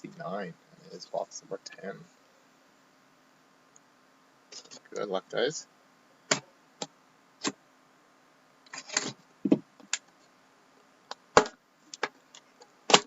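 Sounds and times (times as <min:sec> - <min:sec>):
box clicks and knocks: 0:11.3 - 0:12.1.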